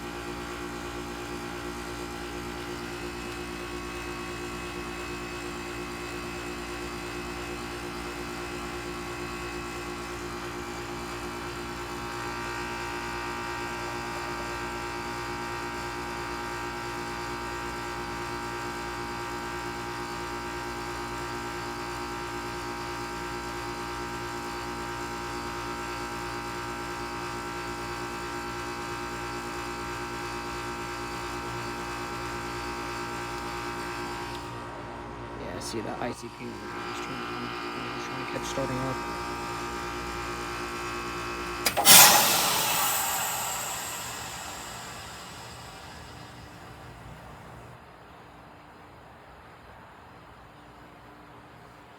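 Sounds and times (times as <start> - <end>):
heat pump unit humming: 35.8 - 47.1
high whine: 41.6 - 46.7.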